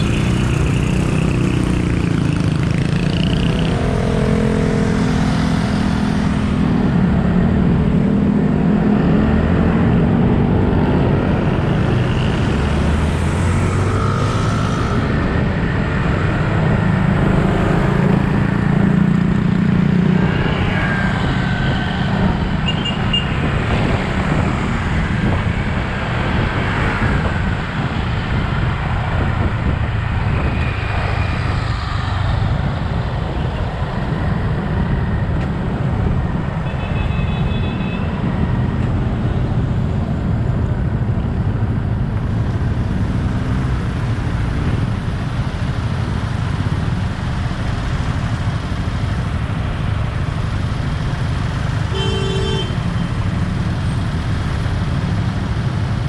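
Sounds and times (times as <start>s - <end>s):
traffic noise: 0.0s - 56.0s
wind: 0.0s - 56.0s
vehicle horn toots: 51.9s - 52.9s.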